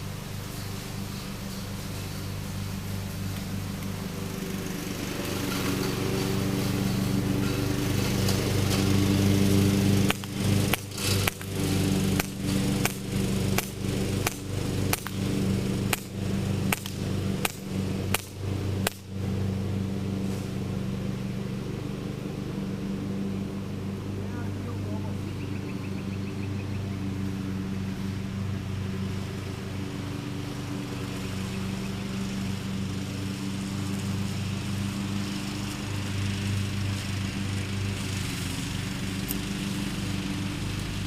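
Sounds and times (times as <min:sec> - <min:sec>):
steady engine hum: 0:00.0 - 0:41.0
air pistol firing sharp pops: 0:10.0 - 0:15.2, 0:15.9 - 0:19.1.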